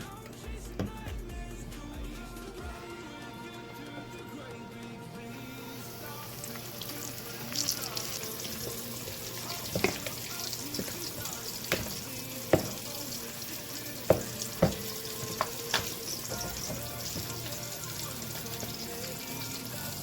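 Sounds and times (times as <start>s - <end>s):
chicken frying in hot oil: 5.7s - 20.0s.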